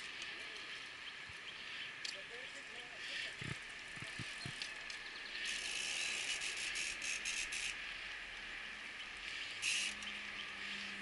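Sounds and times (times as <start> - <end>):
bicycle freehub ratcheting clicks: 3.4 - 7.9, 9.2 - 11.0.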